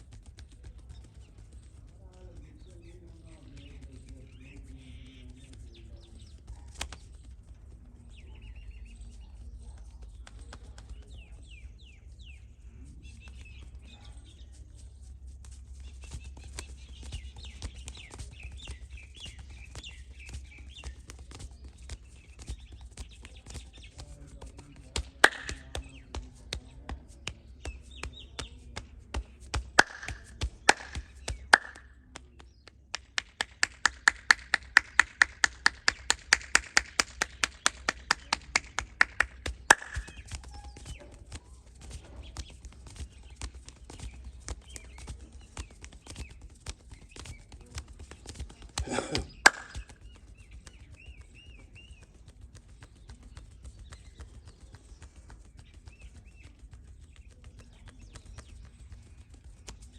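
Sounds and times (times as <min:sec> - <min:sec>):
hands rubbing and tapping skin: 0:00.0 - 0:59.9
faint bird chirps: 0:00.4 - 0:32.7, 0:37.2 - 0:59.9
sharp slaps on skin: 0:25.0 - 0:25.8, 0:29.6 - 0:31.9, 0:32.9 - 0:40.9, 0:48.2 - 0:49.9.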